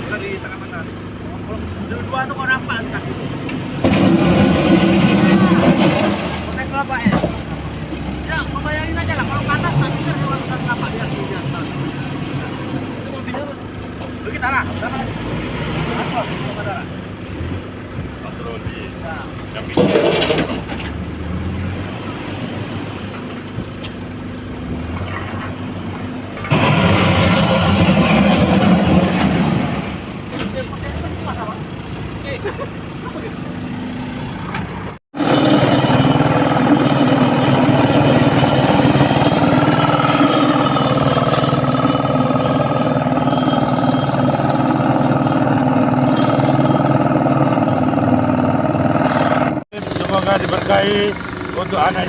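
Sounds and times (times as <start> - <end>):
vehicle engine humming: 0.0 - 52.0
loud rushing noise: 26.5 - 30.3.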